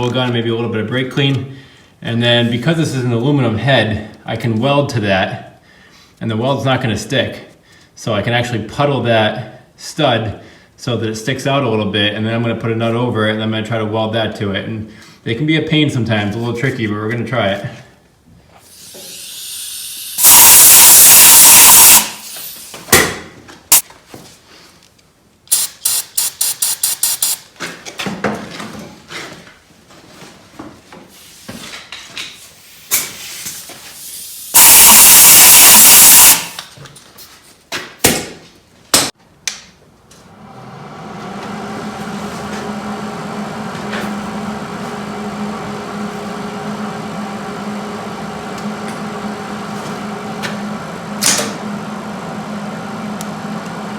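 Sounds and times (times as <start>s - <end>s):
compressed air blow gun blasts: 25.5s - 27.4s
steady machine hum: 40.2s - 53.9s.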